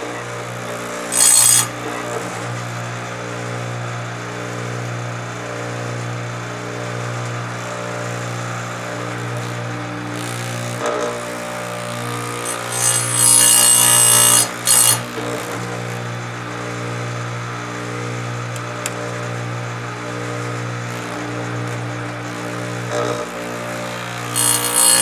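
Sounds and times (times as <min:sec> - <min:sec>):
grinding wheel rasping on chain: 0:00.0 - 0:02.7, 0:12.2 - 0:15.8, 0:20.8 - 0:25.0
sharpener motor hum: 0:00.0 - 0:02.8, 0:08.6 - 0:17.2, 0:18.0 - 0:25.0.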